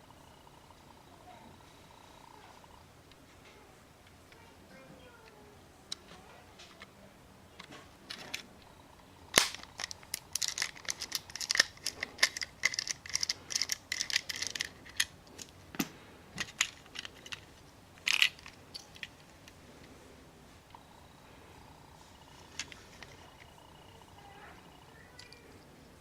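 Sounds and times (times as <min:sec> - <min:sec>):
scratchy plastic rattling: 0:09.4 - 0:15.5.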